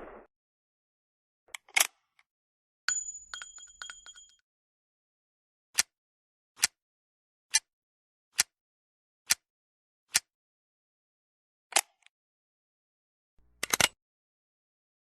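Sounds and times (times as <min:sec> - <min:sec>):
revolver metallic clink: 0:02.9 - 0:04.4.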